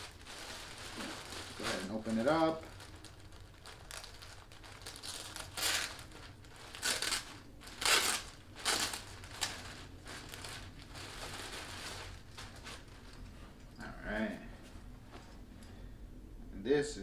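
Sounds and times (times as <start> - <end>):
packaging crinkling and rustling: 0.0 - 13.8.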